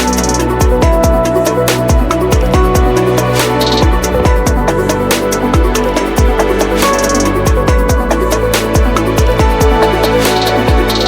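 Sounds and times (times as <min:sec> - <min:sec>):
electronic music with kick drum: 0:00.0 - 0:11.0.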